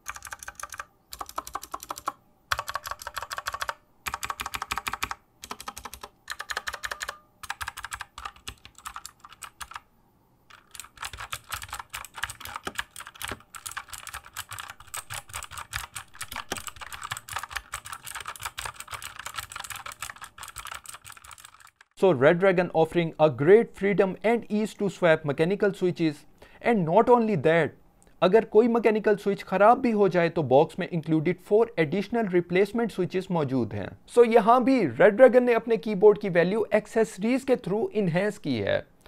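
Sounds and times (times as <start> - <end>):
mechanical keyboard typing: 0.0 - 9.8, 10.5 - 22.0.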